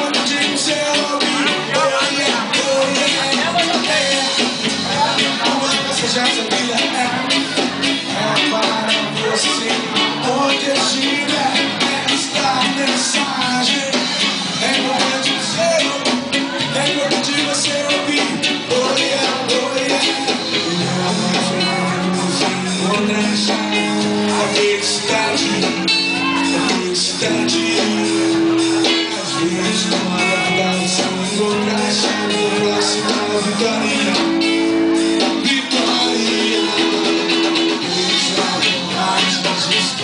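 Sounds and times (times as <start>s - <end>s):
band music with singing: 0.0s - 40.0s
strummed guitar: 0.0s - 40.0s.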